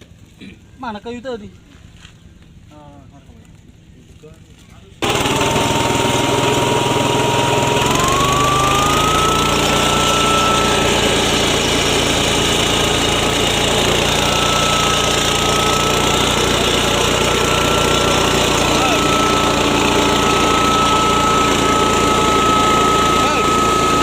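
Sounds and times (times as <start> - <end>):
high mechanical whine: 3.5 - 24.0
petrol engine droning: 5.0 - 24.0.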